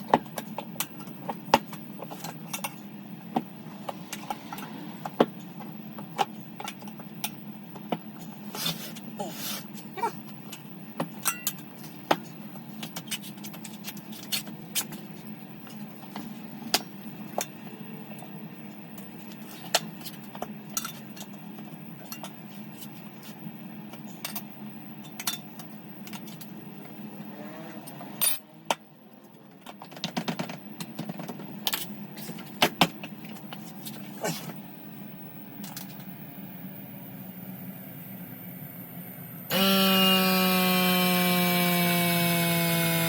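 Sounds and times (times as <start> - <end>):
steady low hum: 0.0 - 40.0
metal tools clinking: 11.2 - 11.6.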